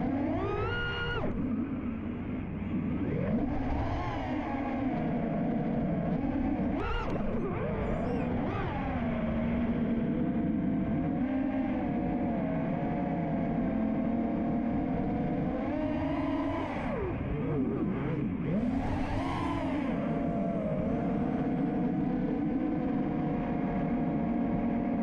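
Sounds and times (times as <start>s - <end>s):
drone motors whining: 0.0s - 12.1s.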